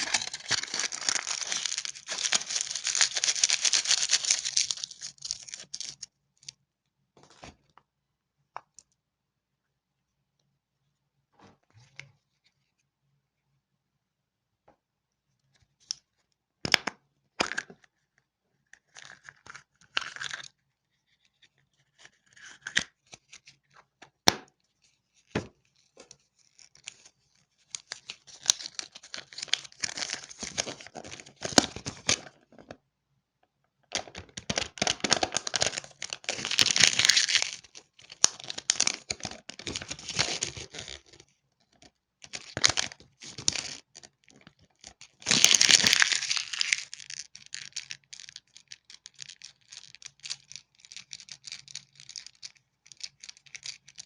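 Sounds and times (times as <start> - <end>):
candy wrappers crinkling: 0.0 - 6.6, 26.5 - 32.3, 34.4 - 41.2, 42.3 - 54.0.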